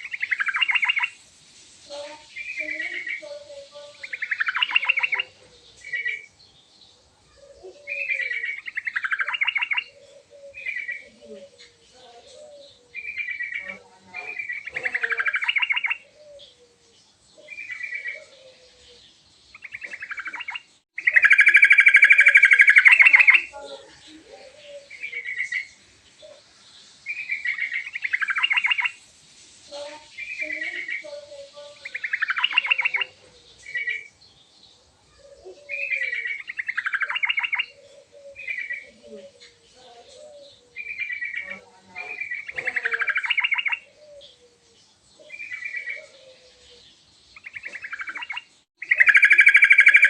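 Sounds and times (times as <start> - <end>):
bird chattering calls: 0.0 - 1.2, 1.9 - 6.3, 7.4 - 16.6, 19.5 - 26.4, 27.1 - 29.0, 29.7 - 34.2, 35.2 - 44.5, 47.4 - 50.0.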